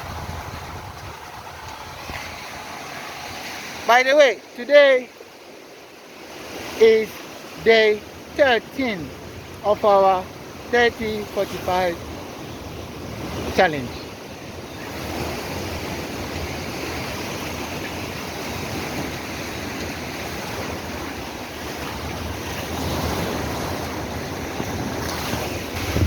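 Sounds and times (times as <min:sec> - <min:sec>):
wind buffeting microphone: 0:00.0 - 0:03.8, 0:10.3 - 0:26.0
ocean surf breaking: 0:00.0 - 0:26.0.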